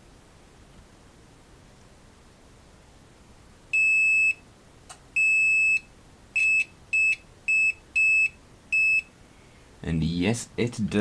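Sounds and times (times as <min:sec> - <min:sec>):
multimeter continuity beeps: 0:03.7 - 0:04.4, 0:05.2 - 0:09.2.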